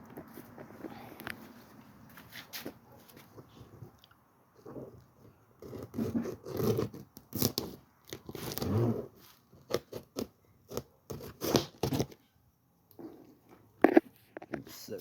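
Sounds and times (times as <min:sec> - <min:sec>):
packing tape and cardboard tearing: 0:05.6 - 0:12.2.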